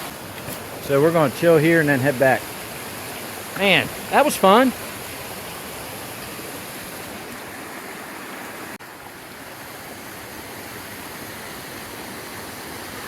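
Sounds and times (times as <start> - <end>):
creek water rushing: 0.0 - 13.0.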